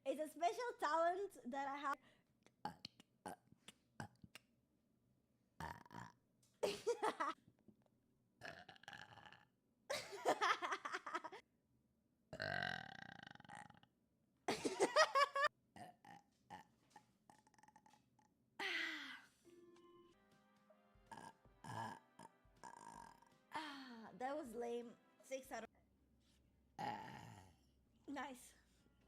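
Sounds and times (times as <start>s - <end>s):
woman burping: 5.6s - 7.3s, 12.4s - 13.9s, 21.1s - 24.0s, 26.8s - 27.6s.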